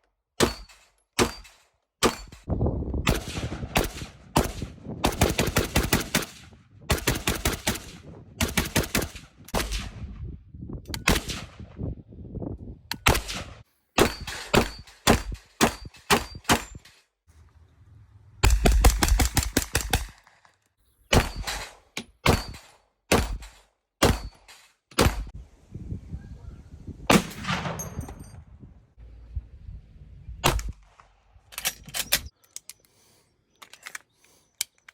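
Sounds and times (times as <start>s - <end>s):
automatic gunfire: 18.4s - 20.1s
single gunshots: 21.1s - 24.4s, 25.0s - 25.3s, 27.1s - 28.1s, 30.4s - 30.9s.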